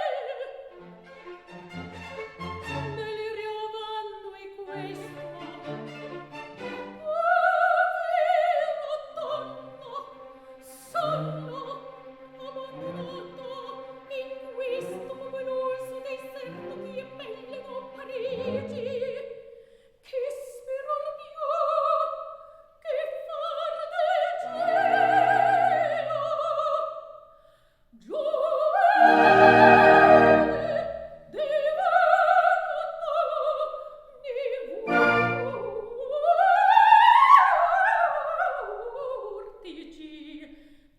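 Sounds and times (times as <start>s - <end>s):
operatic singing: 0.0s - 19.4s, 22.9s - 27.2s, 28.0s - 40.5s
orchestral accompaniment: 0.6s - 3.6s, 4.6s - 7.8s, 28.9s - 31.1s, 34.8s - 35.8s.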